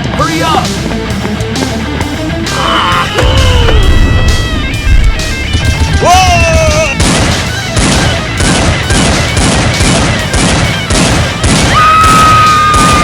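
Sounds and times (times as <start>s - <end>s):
background music: 0.0s - 13.0s
rapid gunfire bursts: 7.0s - 13.0s.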